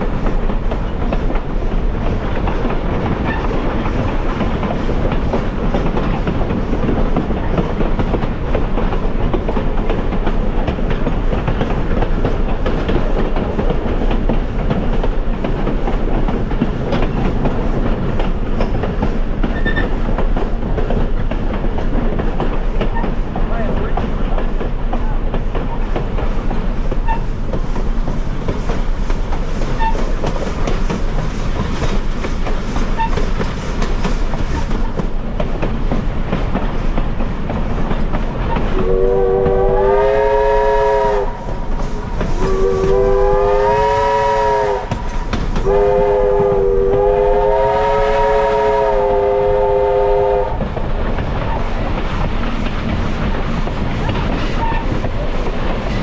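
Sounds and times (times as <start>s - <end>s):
train rumbling on rails: 0.0s - 56.0s
steam locomotive whistle blasts: 38.8s - 41.5s, 42.3s - 45.0s, 45.6s - 50.6s.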